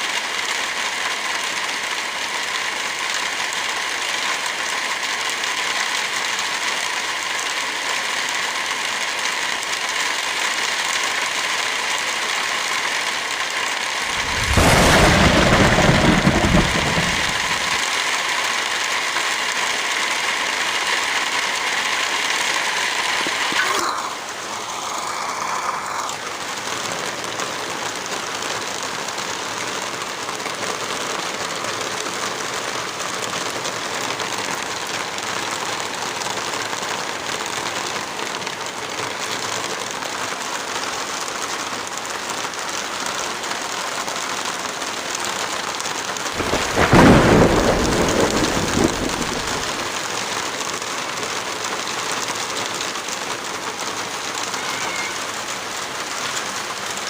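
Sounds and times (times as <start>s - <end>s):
steady rain falling: 0.0s - 57.0s
thunder clap rumbling: 14.1s - 18.0s, 46.4s - 50.0s.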